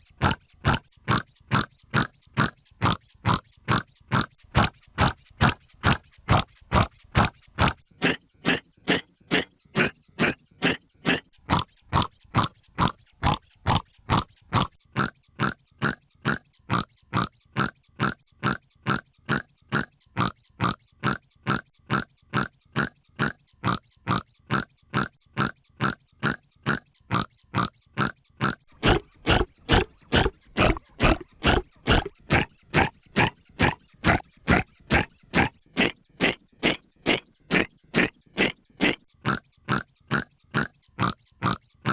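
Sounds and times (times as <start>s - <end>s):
hiccup sound effect: 7.6s - 11.2s, 28.4s - 39.8s.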